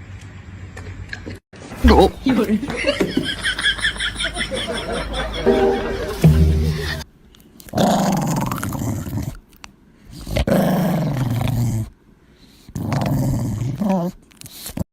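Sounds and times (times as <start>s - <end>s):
dog growling: 7.7s - 9.4s, 10.2s - 11.9s, 12.8s - 14.2s.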